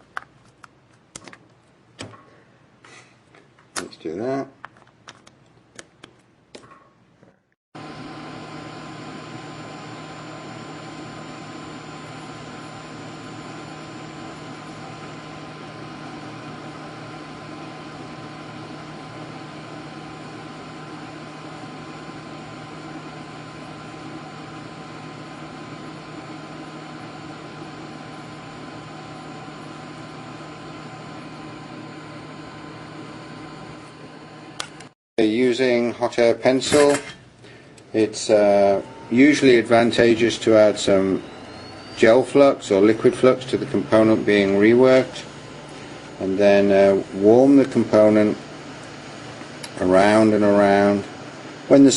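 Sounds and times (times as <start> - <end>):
hot air tool rushing air: 7.8 - 34.6, 39.0 - 51.9.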